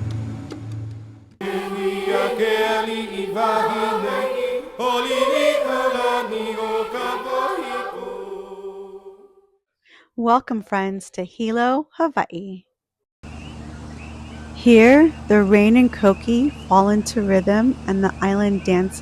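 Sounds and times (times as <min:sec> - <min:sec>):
person chanting: 0:01.4 - 0:09.4.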